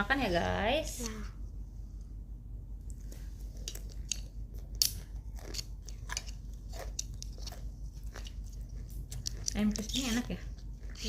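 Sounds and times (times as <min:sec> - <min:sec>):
crunchy chewing: 0:02.9 - 0:11.0.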